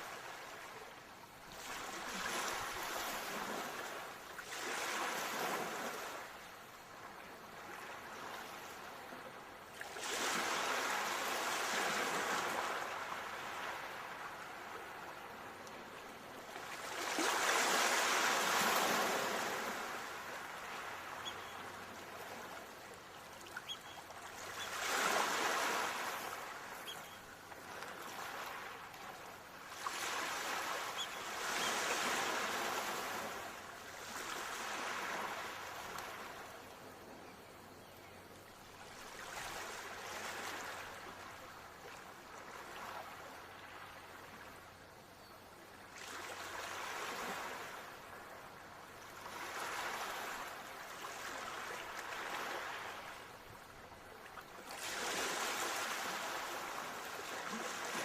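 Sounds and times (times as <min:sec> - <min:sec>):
ocean waves washing in: 0:16.5 - 0:22.7.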